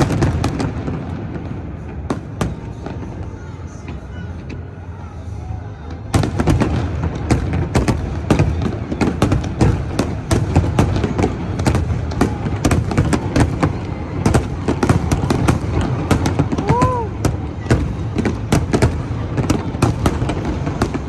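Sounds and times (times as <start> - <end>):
firework bursts and booms: 0.0 - 4.5, 5.9 - 21.0.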